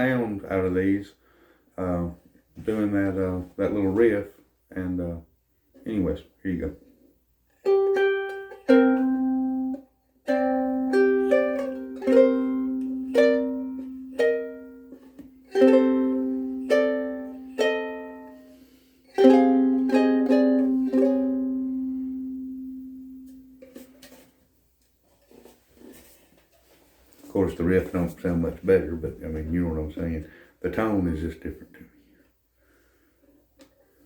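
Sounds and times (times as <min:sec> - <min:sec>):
ukulele fingerpicked riff: 0:07.6 - 0:24.2.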